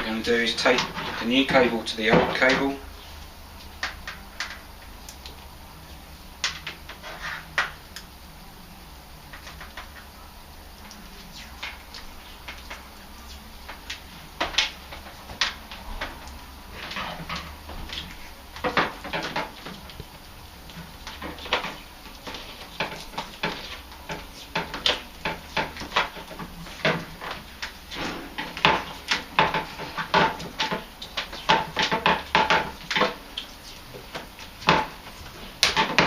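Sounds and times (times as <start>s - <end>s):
tape unrolling and crackling: 10.8s - 36.0s.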